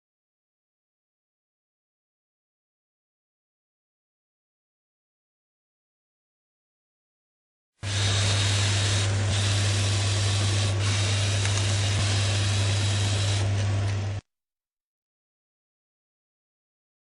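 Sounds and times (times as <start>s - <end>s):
even hiss: 7.8s - 13.5s
steady low hum: 7.8s - 14.2s.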